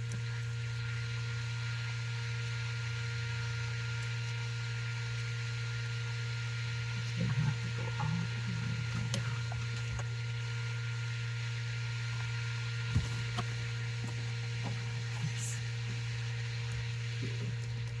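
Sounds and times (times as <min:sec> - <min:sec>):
low hum: 0:04.1 - 0:18.0.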